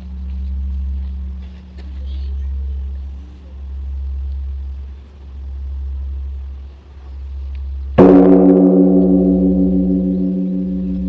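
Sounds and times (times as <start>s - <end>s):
large temple bell ringing: 0.0s - 4.1s, 8.0s - 11.0s
low pulsing hum: 0.0s - 11.0s.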